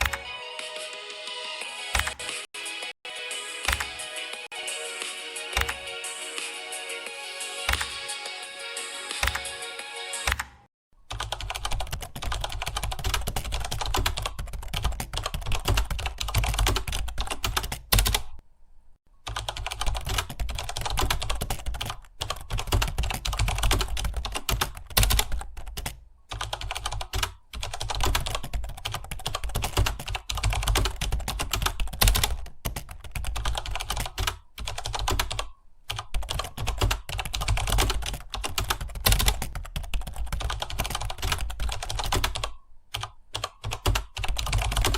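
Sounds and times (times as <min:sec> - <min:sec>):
fast typing on keyboard: 0:05.6 - 0:05.8, 0:07.6 - 0:08.0, 0:10.2 - 0:18.4, 0:19.3 - 0:44.9.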